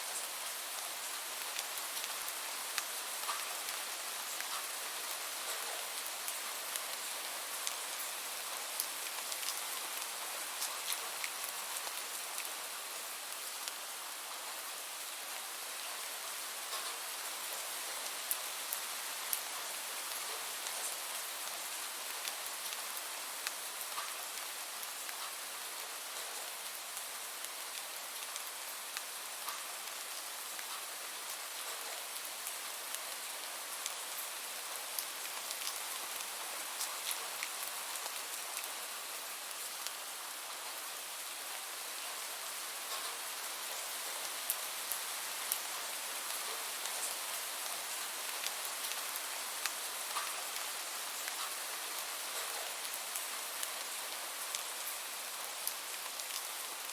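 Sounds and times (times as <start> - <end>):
steady rain hiss: 0.0 - 56.9
faint raindrop clicks: 35.0 - 36.2, 49.6 - 51.6.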